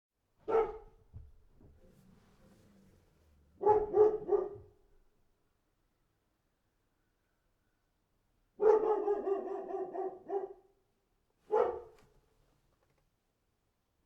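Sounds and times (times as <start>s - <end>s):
dog barking: 0.4s - 1.0s, 3.6s - 4.8s, 8.6s - 10.8s, 11.5s - 12.1s.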